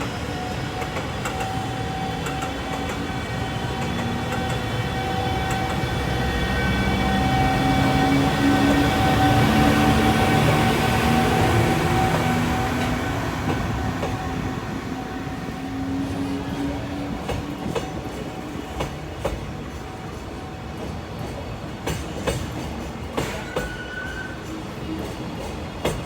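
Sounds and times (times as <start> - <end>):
train wheels clacking over rail joints: 16.2 - 26.0.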